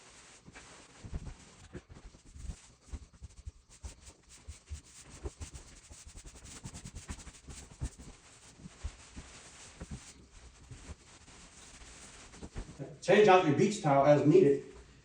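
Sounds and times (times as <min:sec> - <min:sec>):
roller rubbing on wooden floor: 0:04.0 - 0:12.8.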